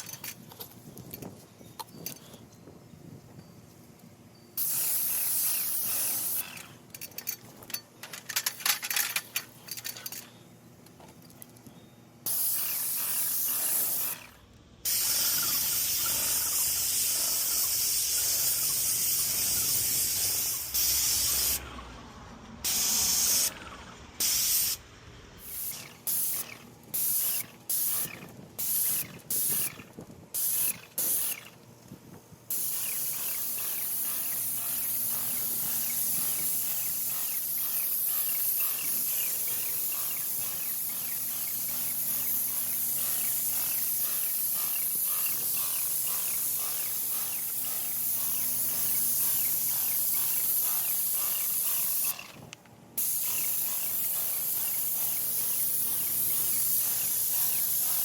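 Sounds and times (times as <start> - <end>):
paint sprayer hissing: 4.6 - 6.8, 12.2 - 21.7, 22.6 - 23.6, 24.2 - 24.8, 25.4 - 31.6, 32.5 - 58.0.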